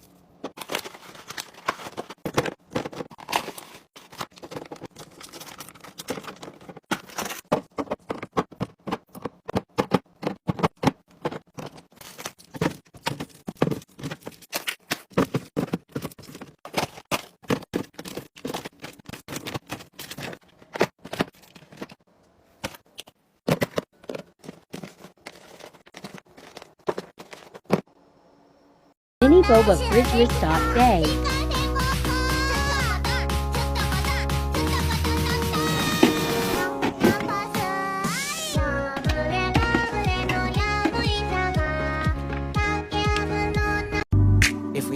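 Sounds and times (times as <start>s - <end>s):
food packages handled and set down: 0.0s - 28.0s, 35.6s - 37.5s, 39.0s - 41.2s.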